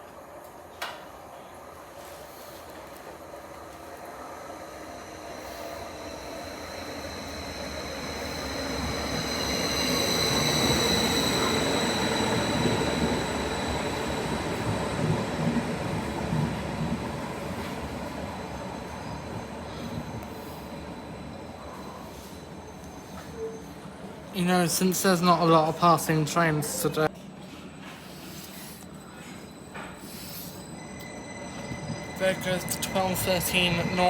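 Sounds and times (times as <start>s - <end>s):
train passing: 0.0s - 34.0s
high whine: 28.8s - 34.0s.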